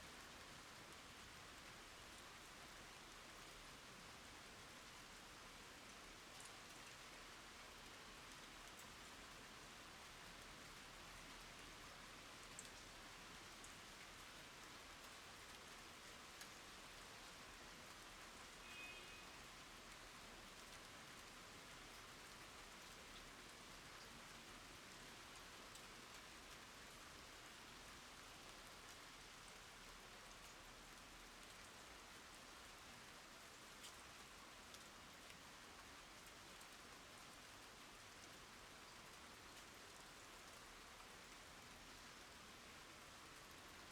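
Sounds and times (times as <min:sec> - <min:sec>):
light rain falling: 0:00.0 - 0:43.9
faint high chirp: 0:18.6 - 0:19.4.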